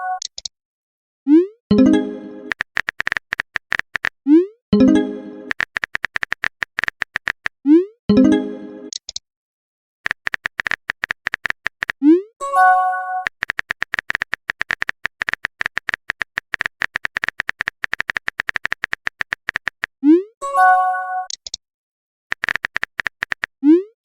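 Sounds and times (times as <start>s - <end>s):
keyboard tapping clicks: 2.4s - 4.2s, 5.5s - 7.6s, 10.1s - 12.0s, 13.3s - 19.9s, 22.3s - 23.5s.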